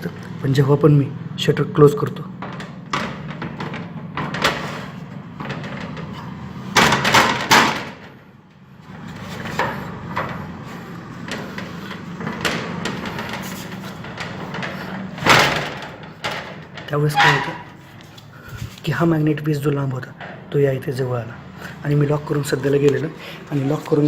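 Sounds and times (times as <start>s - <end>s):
shutter clattering knocks: 2.4s - 18.8s.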